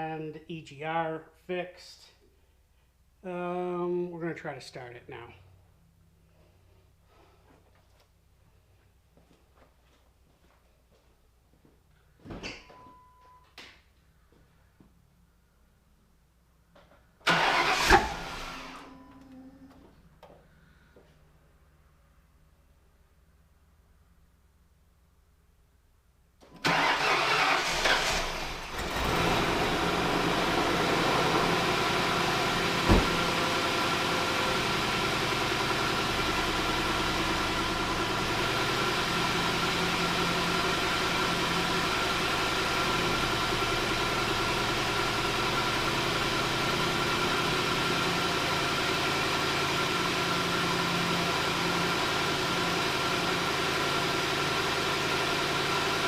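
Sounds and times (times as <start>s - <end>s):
car engine starting and idling: 17.2s - 21.0s, 26.4s - 56.0s.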